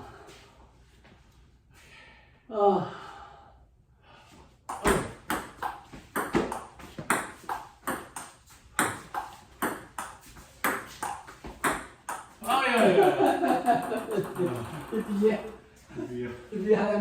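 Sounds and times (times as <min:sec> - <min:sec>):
ball bouncing on table: 0:04.7 - 0:15.4
table tennis ball hitting paddles: 0:04.7 - 0:15.4.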